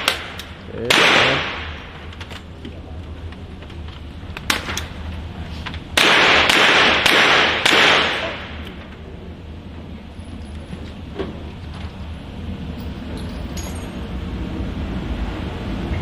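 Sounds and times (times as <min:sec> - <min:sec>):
echoing gunshots: 0:00.0 - 0:02.0, 0:05.9 - 0:08.7.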